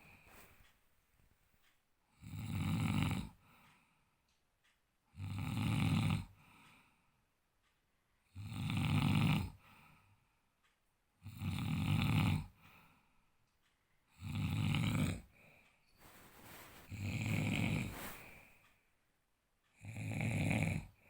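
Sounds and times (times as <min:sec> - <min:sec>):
man snoring: 0:02.2 - 0:03.4, 0:05.2 - 0:06.4, 0:08.3 - 0:09.6, 0:11.2 - 0:12.6, 0:14.2 - 0:15.3, 0:16.9 - 0:18.4, 0:19.8 - 0:21.0.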